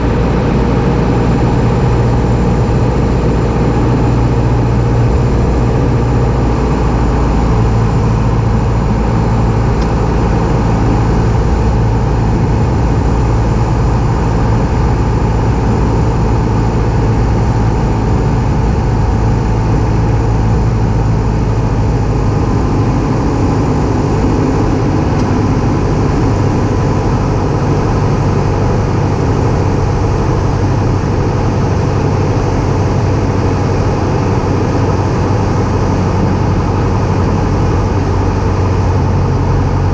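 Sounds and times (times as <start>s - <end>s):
light aircraft engine droning: 0.0s - 39.9s.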